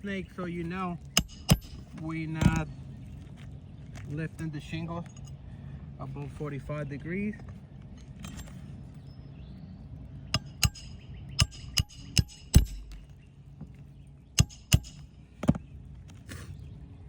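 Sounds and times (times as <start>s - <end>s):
hammer striking roofing nails: 1.2s - 2.6s, 10.4s - 13.1s, 14.4s - 15.6s.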